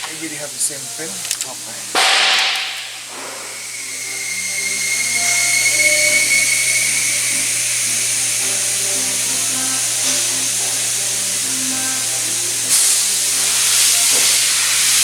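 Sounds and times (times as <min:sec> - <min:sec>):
steady hiss with high whistle: 0:02.7 - 0:15.0
soft background music: 0:03.7 - 0:14.9.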